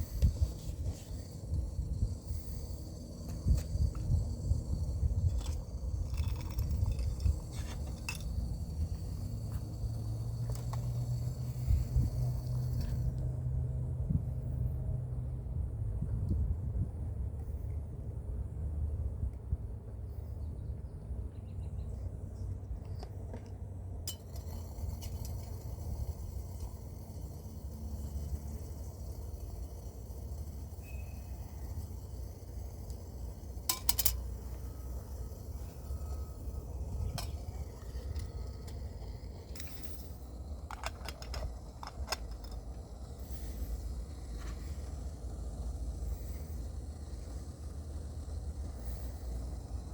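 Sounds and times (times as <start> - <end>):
coffee gear clinking and tapping: 0.0 - 13.1, 24.1 - 49.9
steady low rumble: 0.0 - 49.9.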